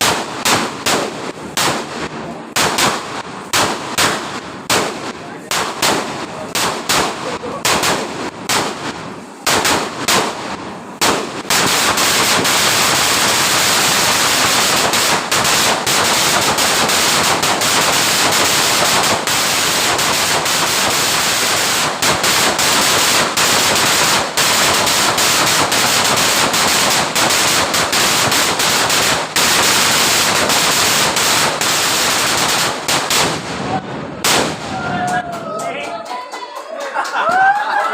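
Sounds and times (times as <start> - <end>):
firecrackers exploding: 0.0 - 35.4.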